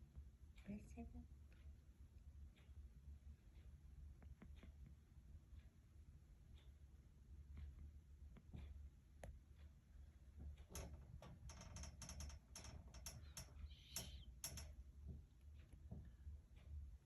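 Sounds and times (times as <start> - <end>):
low steady hum: 0.0 - 17.0
faint clicks and taps: 3.4 - 5.8, 7.4 - 17.0.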